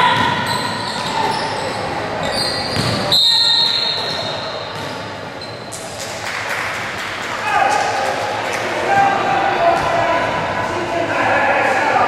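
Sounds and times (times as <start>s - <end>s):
voices echoing in gym: 0.0s - 12.0s
basketball bouncing: 2.7s - 3.1s, 4.7s - 5.1s.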